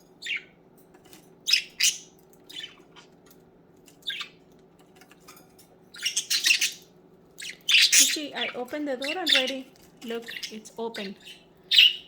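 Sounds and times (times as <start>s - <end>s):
budgerigars squawking: 6.0s - 6.8s, 7.4s - 12.0s.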